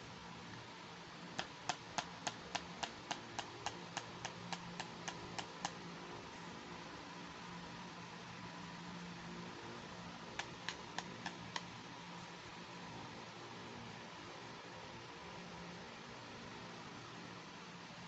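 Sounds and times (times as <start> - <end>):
faint steady hiss: 0.0 - 18.0
sharp evenly spaced clicks: 1.3 - 5.9, 10.3 - 11.8.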